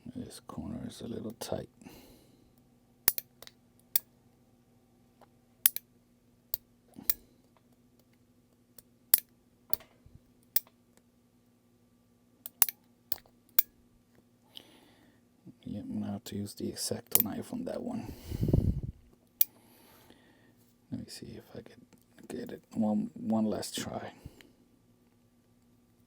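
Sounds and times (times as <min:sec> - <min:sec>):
faint steady hum: 0:00.0 - 0:26.0
small tool clicks: 0:03.1 - 0:04.1, 0:05.6 - 0:05.9, 0:12.4 - 0:13.7.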